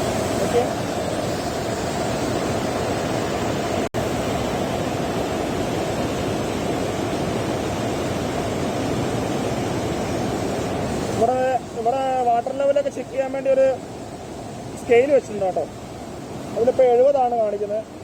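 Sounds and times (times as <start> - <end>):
river rushing: 0.0 - 18.0.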